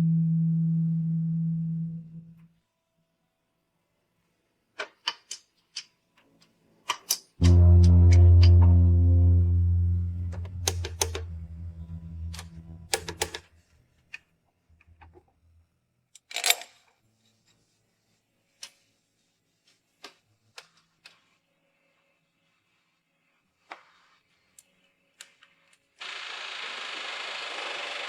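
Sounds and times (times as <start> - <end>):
low droning hum: 7.4 - 13.4.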